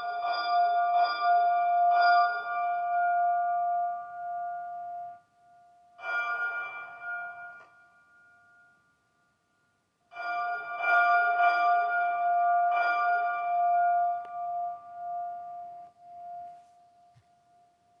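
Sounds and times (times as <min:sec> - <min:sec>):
tower bell ringing: 0:00.0 - 0:18.0.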